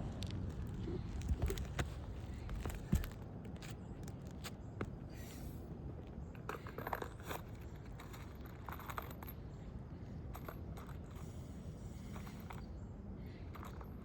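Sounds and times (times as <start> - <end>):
shingles crunching and scraping: 0.3 - 5.1.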